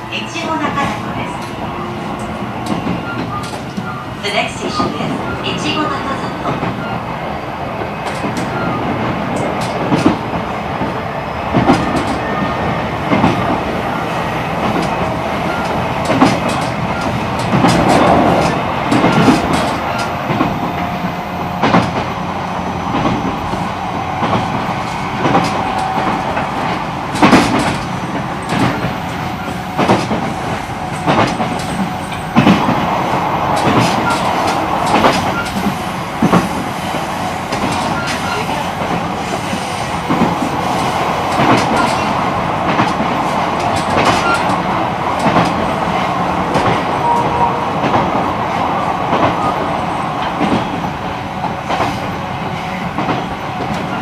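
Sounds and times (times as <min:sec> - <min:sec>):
train wheels rumbling on rail: 0:00.0 - 0:54.0
wheels clacking over rail joints: 0:07.8 - 0:22.2, 0:22.9 - 0:36.8.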